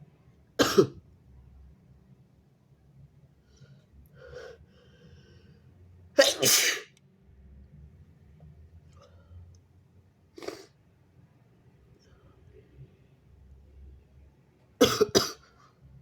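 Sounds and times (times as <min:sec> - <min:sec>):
person sneezing: 0:06.2 - 0:06.9.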